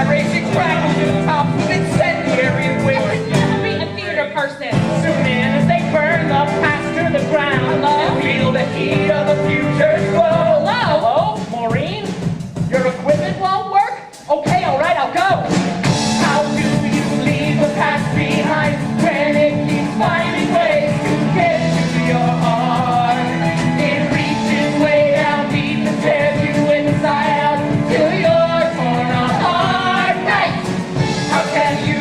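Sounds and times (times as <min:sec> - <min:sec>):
rock band playing: 0:00.0 - 0:32.0.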